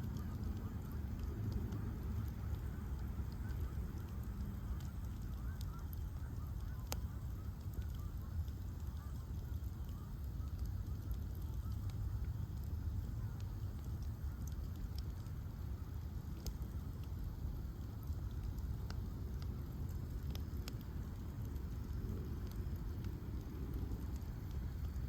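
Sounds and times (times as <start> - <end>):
bonfire rumbling and crackling: 0.0 - 25.0
fire popping: 0.0 - 25.0.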